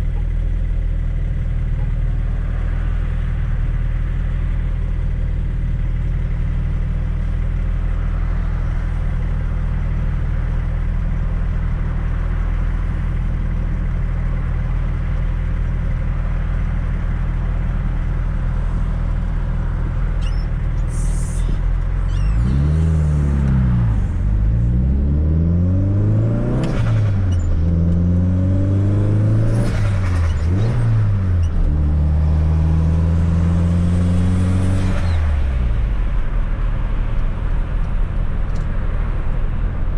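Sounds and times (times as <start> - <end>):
road noise: 0.0 - 39.9
car engine accelerating: 15.6 - 39.9.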